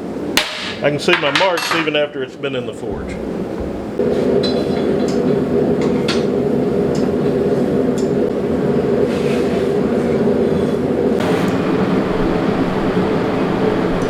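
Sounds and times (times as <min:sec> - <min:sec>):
forge running: 0:11.2 - 0:14.0.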